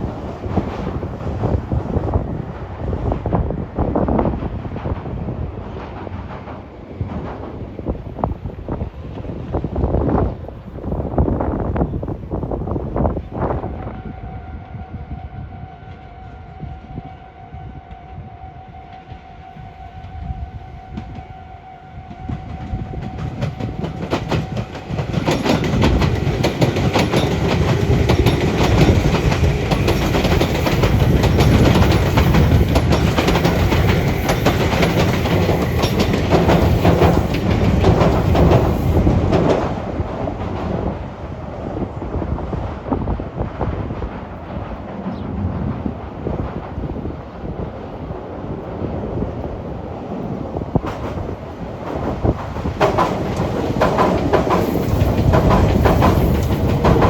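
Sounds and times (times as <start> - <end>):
train wheels clattering over rails: 22.1 - 47.6, 50.1 - 57.0.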